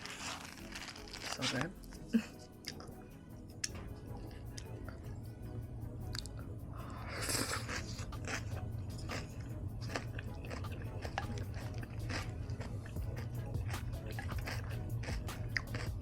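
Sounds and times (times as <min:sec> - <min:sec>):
crunchy biting and chewing: 0:00.0 - 0:02.9, 0:06.1 - 0:16.0.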